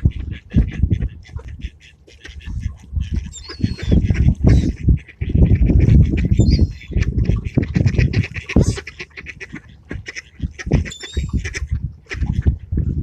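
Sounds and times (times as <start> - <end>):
ducks quacking: 0.0 - 13.0.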